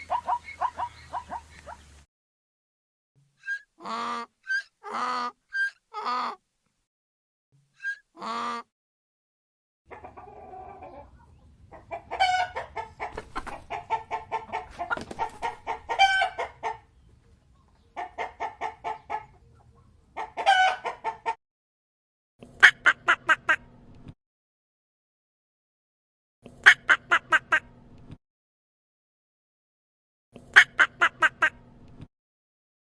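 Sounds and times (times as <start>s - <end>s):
chickens clucking: 0.0s - 2.0s, 9.9s - 21.4s.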